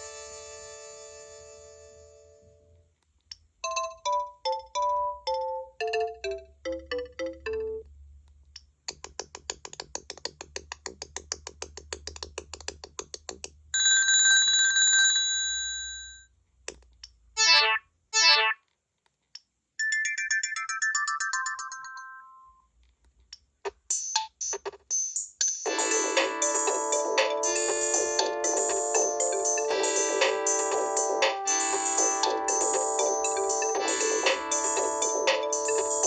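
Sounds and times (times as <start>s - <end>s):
cordless phone ringtones: 13.8s - 16.3s, 19.8s - 22.6s.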